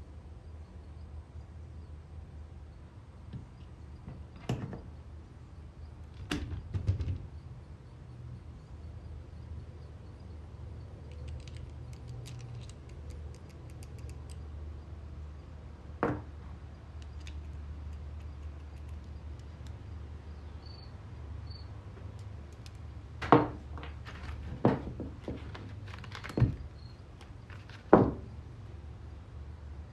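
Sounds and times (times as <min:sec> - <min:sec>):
steady low hum: 0:07.2 - 0:29.9
metal parts clicking and knocking: 0:11.0 - 0:14.5, 0:17.0 - 0:19.8, 0:22.0 - 0:28.3.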